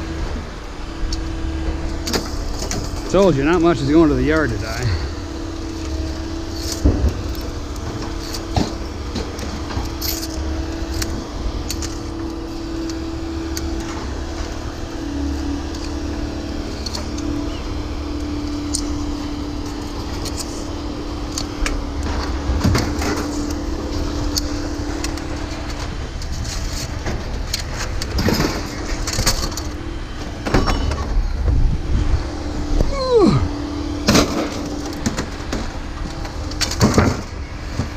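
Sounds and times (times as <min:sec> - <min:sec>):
vehicle engine rumble and hum: 0:00.0 - 0:37.9
knocks and clatter: 0:06.6 - 0:13.0, 0:24.3 - 0:31.6, 0:34.1 - 0:37.9.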